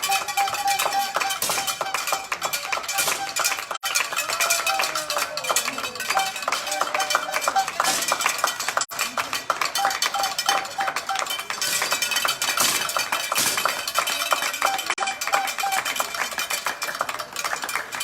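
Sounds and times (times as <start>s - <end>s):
short high beeps: 0.0s - 3.8s.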